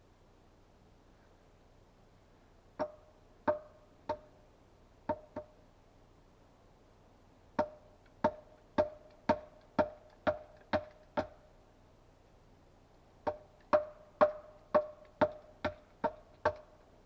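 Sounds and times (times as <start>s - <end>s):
tool striking a log: 2.8s - 4.3s, 5.1s - 5.5s, 7.6s - 11.4s, 13.2s - 16.7s.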